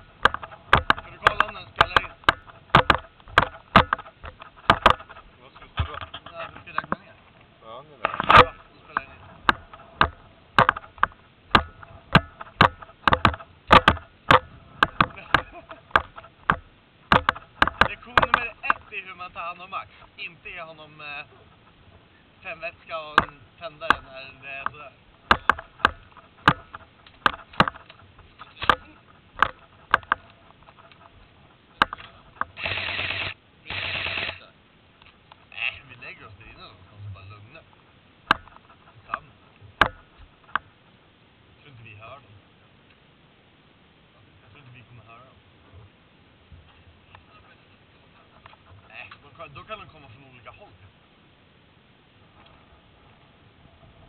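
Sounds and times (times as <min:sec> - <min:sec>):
sharp knocks: 0:00.0 - 0:07.1, 0:08.0 - 0:19.0, 0:23.0 - 0:33.3, 0:38.3 - 0:40.7
sharp irregular clicks and snaps: 0:00.0 - 0:19.1, 0:23.0 - 0:35.8
steady hiss bursts: 0:30.3 - 0:36.8.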